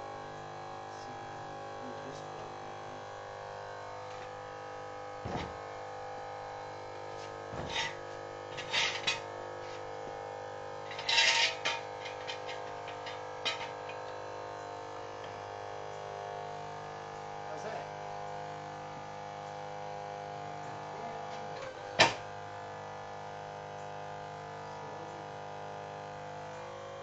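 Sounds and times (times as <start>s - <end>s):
hydraulic pump motor humming: 0.0s - 17.4s.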